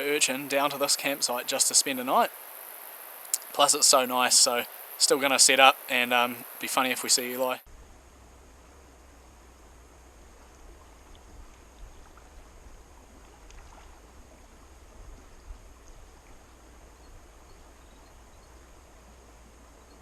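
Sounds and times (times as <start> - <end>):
faint clicks: 3.2 - 3.5, 15.2 - 16.4
river water flowing over stones: 9.9 - 17.4.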